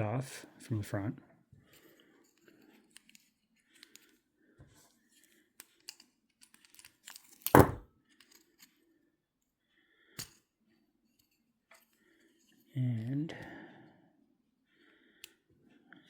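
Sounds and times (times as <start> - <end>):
metal clicks and scrapes of fishing reel: 2.2 - 4.2, 5.2 - 7.6
thump: 7.6 - 7.8.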